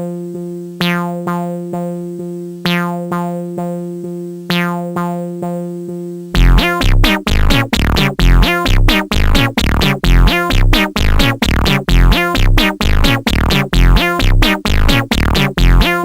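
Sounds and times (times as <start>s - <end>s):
synthesizer plucked notes: 0.0s - 16.0s
deep pulsing bass and beat: 6.4s - 16.0s.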